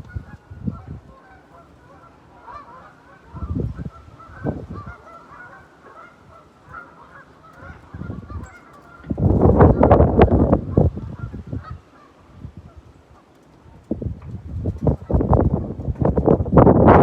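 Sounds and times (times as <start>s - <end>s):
geese honking: 0.0s - 13.4s
wind buffeting microphone: 0.0s - 17.0s.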